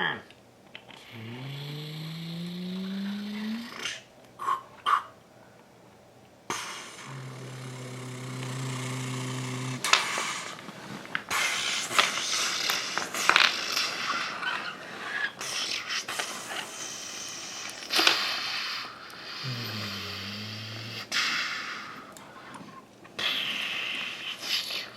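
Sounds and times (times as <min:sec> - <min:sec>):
low motor hum: 0:07.0 - 0:09.9.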